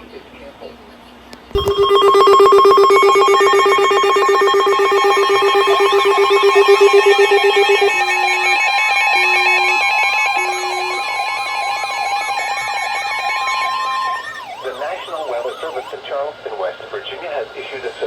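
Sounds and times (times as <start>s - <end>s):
fast-pulsing lower beep: 1.6s - 15.9s
steady high alert tone: 1.6s - 15.9s
warbling siren-like tone: 1.6s - 16.0s.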